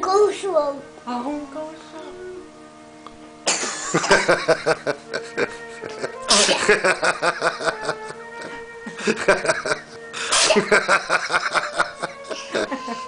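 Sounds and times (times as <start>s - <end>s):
music playing: 0.0s - 13.0s
person sneezing: 3.5s - 3.7s, 6.3s - 6.8s, 10.2s - 10.7s.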